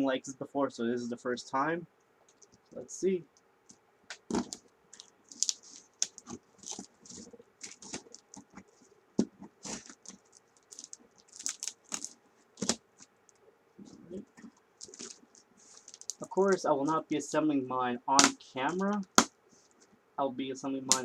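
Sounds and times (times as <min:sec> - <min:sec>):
packaging rustling and scraping: 0:04.2 - 0:13.1, 0:13.8 - 0:16.6.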